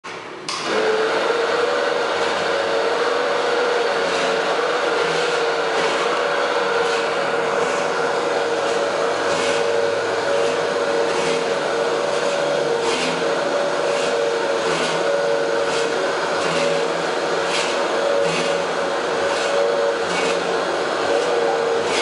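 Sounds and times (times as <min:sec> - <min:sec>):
mill motor humming: 0:00.5 - 0:22.0
faint scrape: 0:04.0 - 0:20.5.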